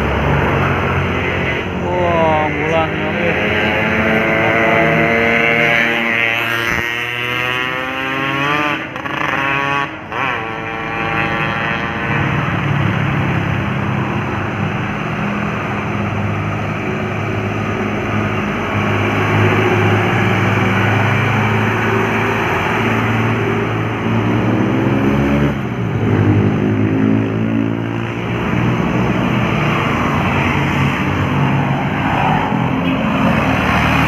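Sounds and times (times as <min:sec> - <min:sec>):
road noise: 0:00.0 - 0:34.0.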